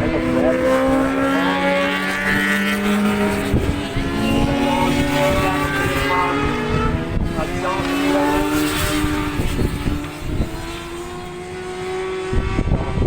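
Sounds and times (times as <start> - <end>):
racing motorcycles at full throttle: 0.0 - 13.0
wind rumble on microphone: 0.0 - 13.0.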